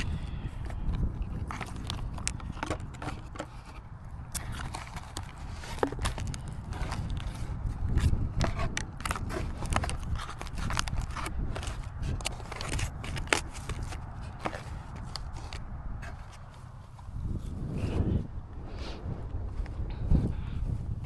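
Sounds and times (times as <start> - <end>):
steady low rumble: 0.0 - 21.0
hands tapping and scraping cardboard: 0.9 - 16.6.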